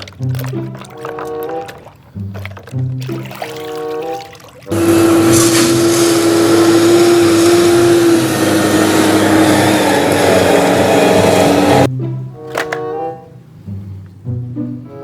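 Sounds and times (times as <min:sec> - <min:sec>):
small motor whining and hissing: 0:04.7 - 0:11.9.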